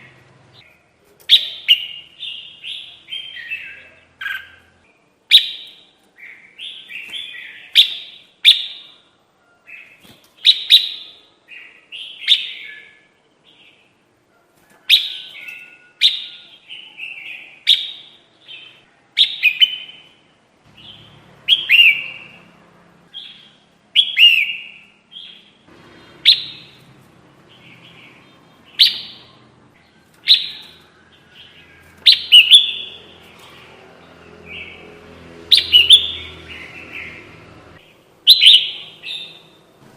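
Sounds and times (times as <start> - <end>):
bulbul chirping calls: 23.2 - 26.8, 27.5 - 33.0, 35.5 - 37.2, 38.3 - 39.6.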